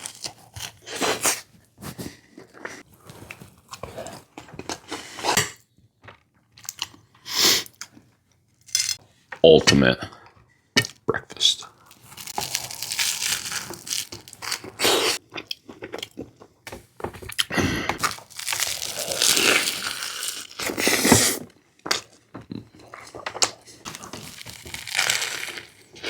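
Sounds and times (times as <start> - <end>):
chewing and biting food: 11.8 - 16.6, 17.3 - 26.0.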